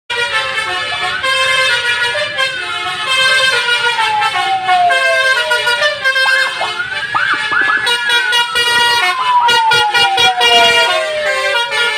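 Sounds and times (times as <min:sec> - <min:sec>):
multi-tone musical bus horn: 0:00.1 - 0:11.9.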